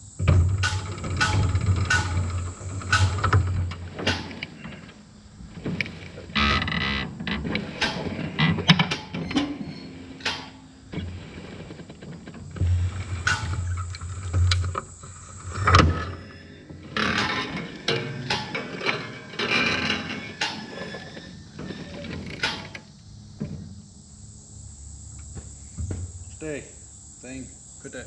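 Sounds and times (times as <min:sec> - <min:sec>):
baler knotter clanking and rattling: 0:00.2 - 0:23.8
sharp knocks: 0:00.3 - 0:04.6.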